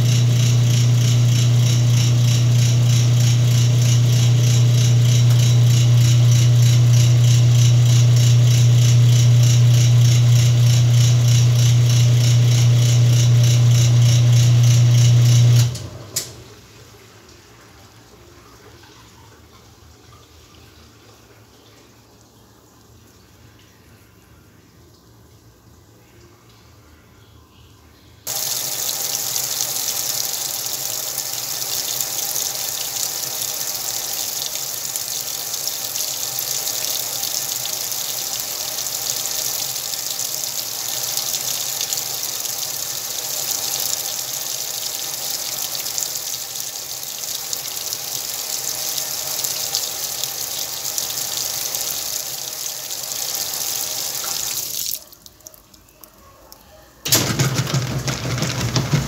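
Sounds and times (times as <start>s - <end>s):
water pouring into washing machine: 0.0s - 21.8s, 28.3s - 55.8s, 57.1s - 59.0s.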